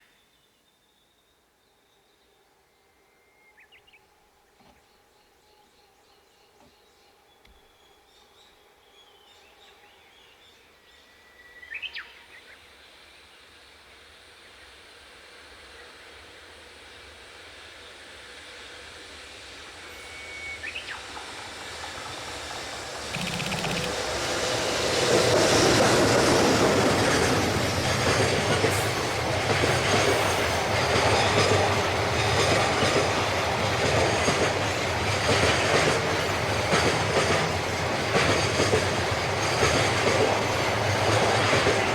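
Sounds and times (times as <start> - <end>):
electric locomotive passing: 14.9 - 41.9.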